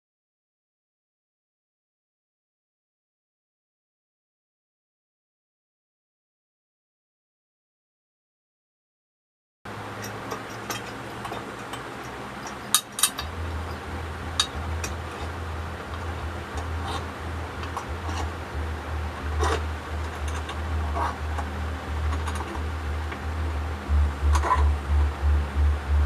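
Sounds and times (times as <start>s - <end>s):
steady low hum: 9.7s - 26.0s.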